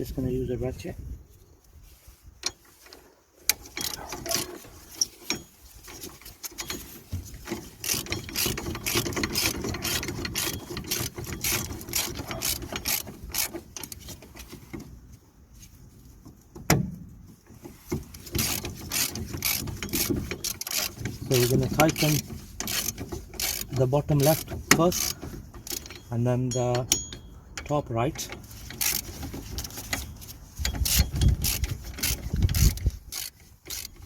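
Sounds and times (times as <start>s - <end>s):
socket ratchet clicking: 7.8s - 14.2s, 18.2s - 26.1s, 26.7s - 34.0s.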